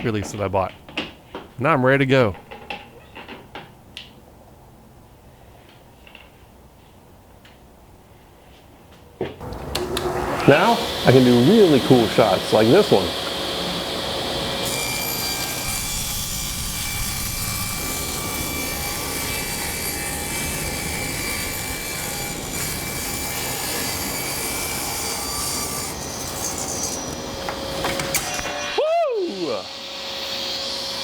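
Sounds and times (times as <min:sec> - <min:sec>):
table saw cutting wood: 0:09.4 - 0:31.0.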